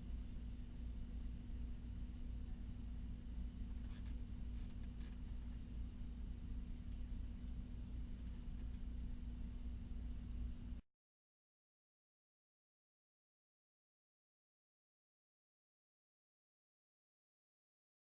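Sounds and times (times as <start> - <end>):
insect fast-pulsing trill: 0.0 - 10.8
insect intermittent trill: 0.0 - 10.8
low steady hum: 0.0 - 10.8.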